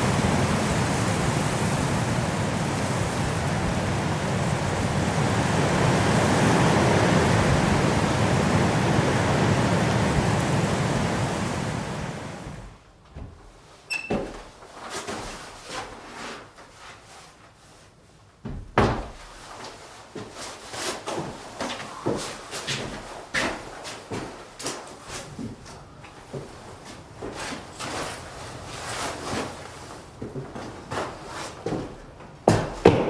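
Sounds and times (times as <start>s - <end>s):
strong wind blowing: 0.0s - 12.8s.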